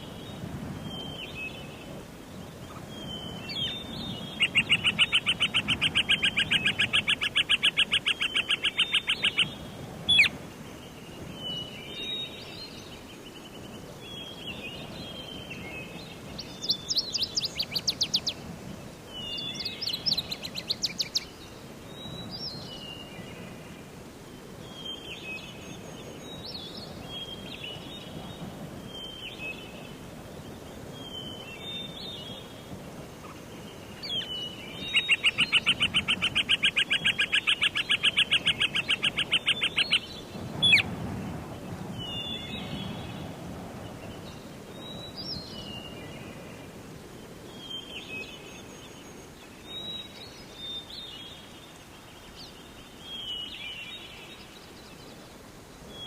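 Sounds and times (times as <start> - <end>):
faint background noise: 0.0 - 56.0
birds chirping: 2.5 - 10.4, 15.9 - 18.4, 33.2 - 41.0
songbird trilling: 2.6 - 10.4, 16.4 - 18.4, 19.2 - 21.3, 34.0 - 40.9.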